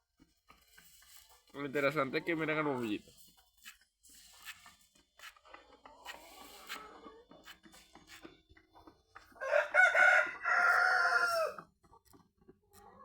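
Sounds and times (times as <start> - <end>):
rooster crowing: 9.4 - 11.6.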